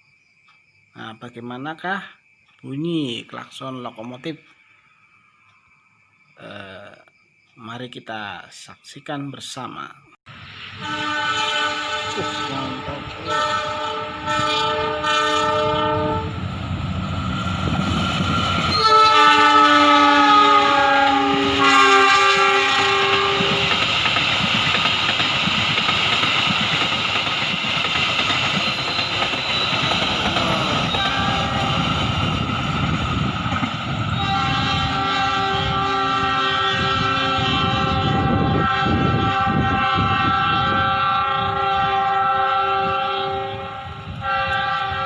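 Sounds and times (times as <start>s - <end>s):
locomotive air horn: 10.6s - 16.5s, 18.7s - 23.8s, 29.4s - 32.2s, 34.1s - 45.0s
train rumble and rail clatter: 10.9s - 45.0s.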